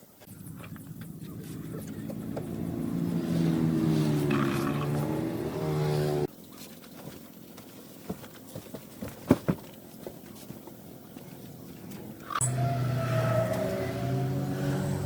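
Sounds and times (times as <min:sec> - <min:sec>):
car engine running: 0:00.3 - 0:06.3.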